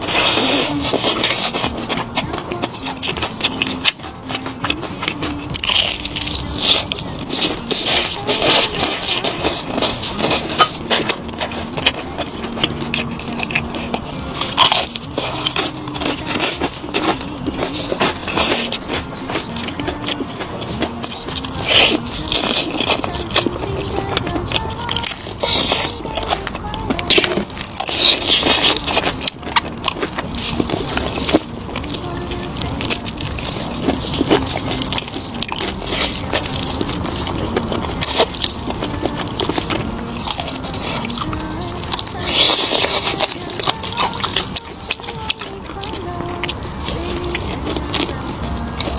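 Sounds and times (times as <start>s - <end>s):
chewing and crunching food: 0.0s - 48.9s
wet mouth sounds: 0.0s - 48.9s.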